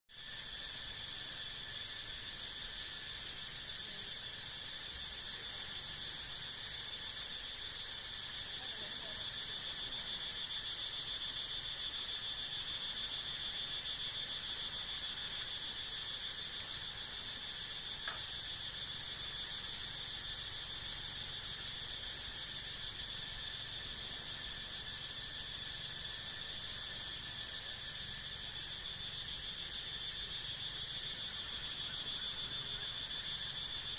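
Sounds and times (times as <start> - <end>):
insects trilling: 0.1 - 33.9.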